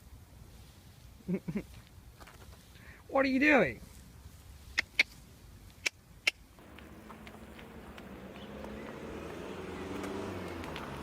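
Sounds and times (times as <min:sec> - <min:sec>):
motor humming: 0:06.6 - 0:11.0.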